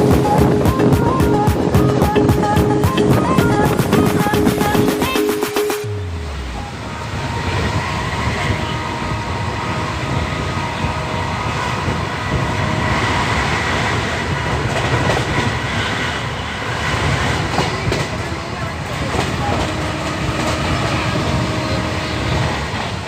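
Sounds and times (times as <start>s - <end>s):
train wheels rumbling on rails: 6.1s - 23.0s.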